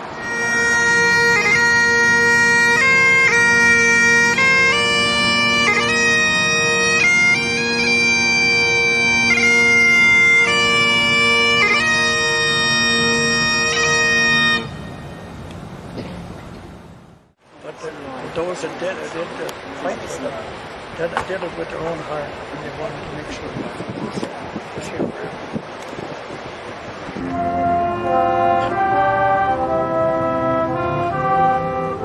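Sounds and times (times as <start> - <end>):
bagpipes playing a tune: 0.0 - 15.1, 27.2 - 32.0.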